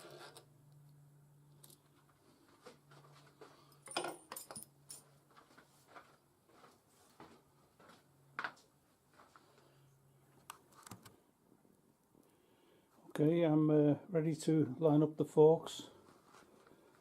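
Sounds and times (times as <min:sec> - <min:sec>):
steady low hum: 0:00.0 - 0:17.0
metallic clinks of tools: 0:03.7 - 0:05.1.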